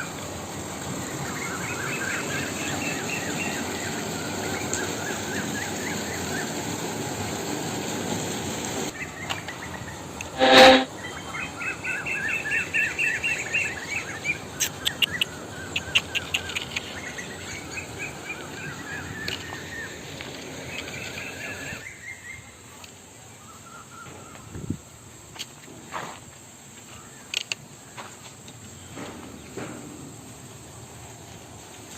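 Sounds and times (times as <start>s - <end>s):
small birds twittering: 11.4s - 20.0s.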